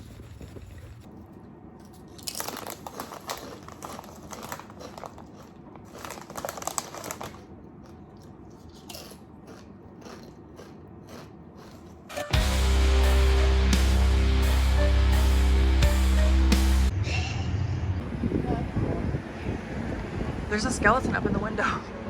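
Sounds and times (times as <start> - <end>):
crinkling and rustling handling: 0.0 - 8.8
loud music with drums: 12.2 - 16.9.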